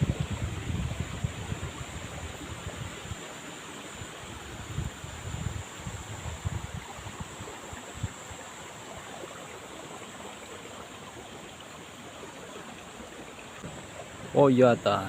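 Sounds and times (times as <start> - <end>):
rushing rain or water: 0.0 - 15.0.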